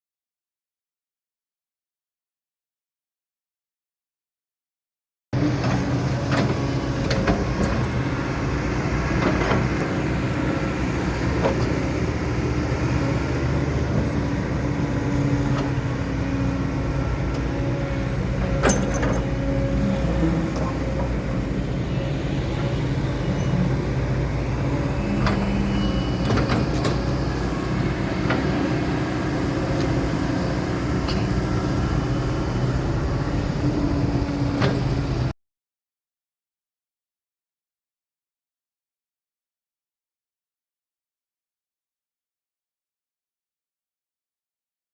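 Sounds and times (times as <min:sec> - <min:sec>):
excavator diesel engine running: 0:05.4 - 0:35.3.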